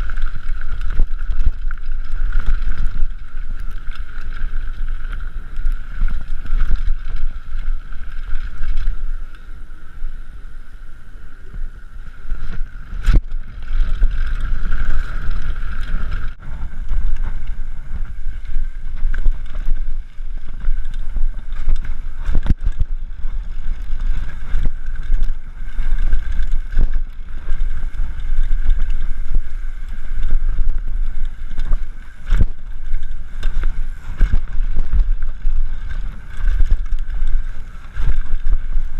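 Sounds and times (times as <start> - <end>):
mountain bike rattling: 0.0 - 38.9
wind buffeting microphone: 0.0 - 38.9
bike knocking on bumps: 11.6 - 38.9.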